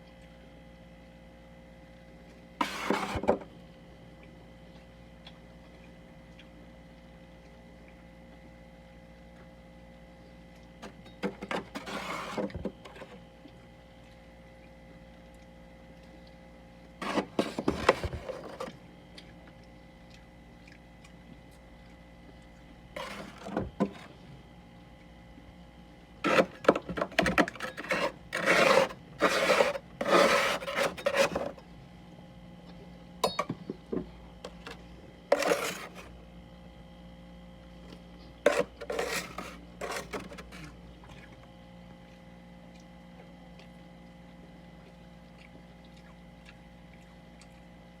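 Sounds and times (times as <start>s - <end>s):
faint steady hum: 0.0s - 48.0s
frost scraping: 11.8s - 12.5s, 17.0s - 18.7s, 23.0s - 23.5s, 26.2s - 31.6s, 35.3s - 36.2s, 38.5s - 40.7s.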